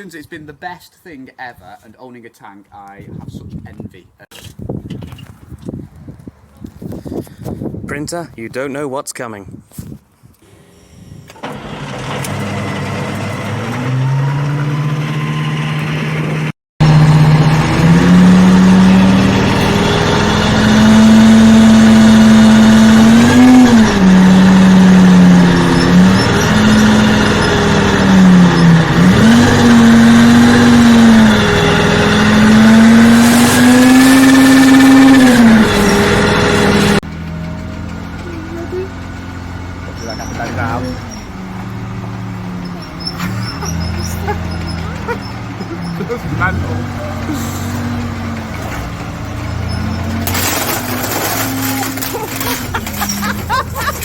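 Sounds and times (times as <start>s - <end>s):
armoured vehicle engine revving: 11.4s - 54.0s.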